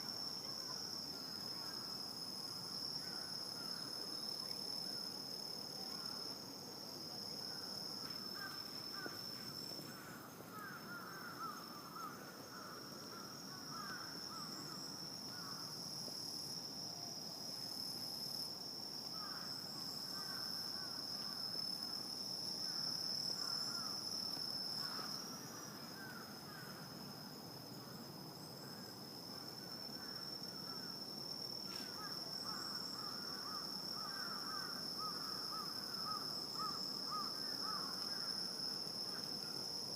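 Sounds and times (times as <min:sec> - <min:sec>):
scratchy insect chirping: 0:28.6 - 0:39.9.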